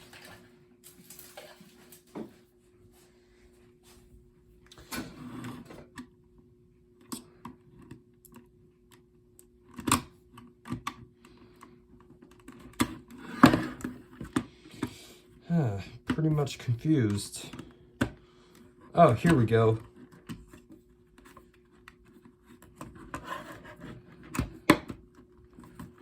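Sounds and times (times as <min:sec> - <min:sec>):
faint steady hum: 0:00.0 - 0:26.0.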